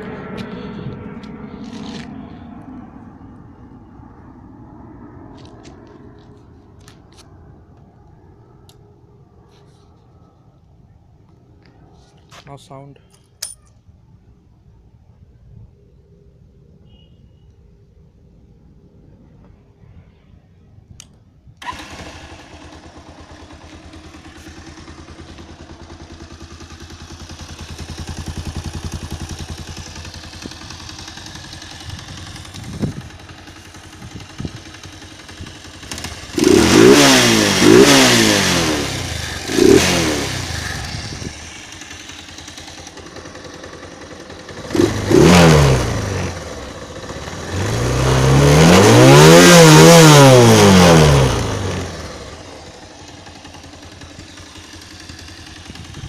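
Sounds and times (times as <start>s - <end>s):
motorcycle engine starting and idling: 0.0s - 12.0s, 20.9s - 56.0s
motorcycle engine revving: 21.6s - 56.0s.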